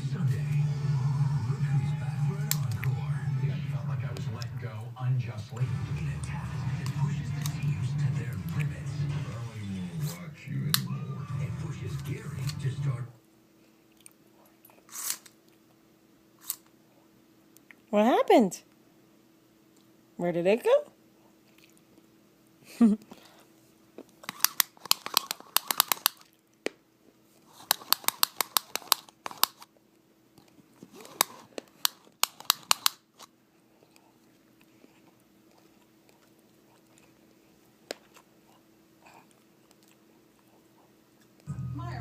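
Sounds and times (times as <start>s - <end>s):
steady low hum: 0.0s - 17.9s, 20.9s - 42.0s.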